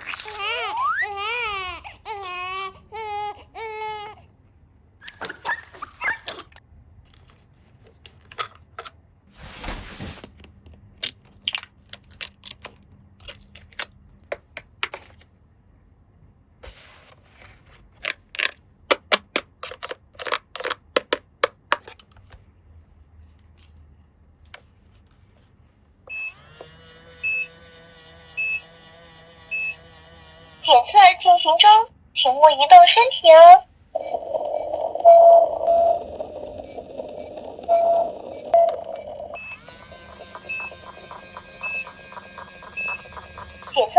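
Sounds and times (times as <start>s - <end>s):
short rustle: 9.3s - 10.4s
plastic toy parts clicking: 11.0s - 15.3s, 18.0s - 22.0s
toy electronic tone: 26.1s - 43.9s
toy short beeps: 30.7s - 43.9s.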